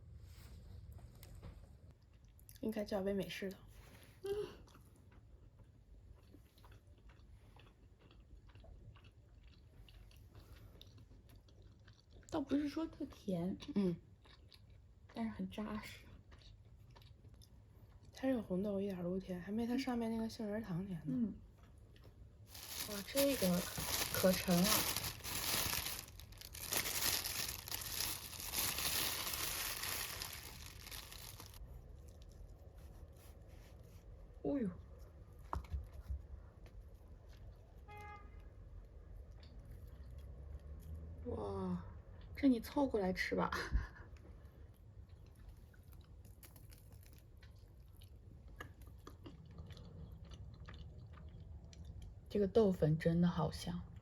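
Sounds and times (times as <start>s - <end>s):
chewing with mouth clicks: 1.9s - 2.6s, 4.6s - 18.2s, 44.2s - 52.3s
food packaging crinkling: 22.5s - 31.6s, 46.2s - 47.4s.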